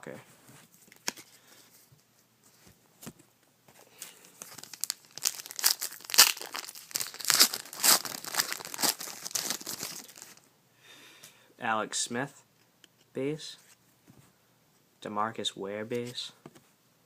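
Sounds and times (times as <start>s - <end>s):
wrapper tearing and crinkling: 4.4s - 10.4s.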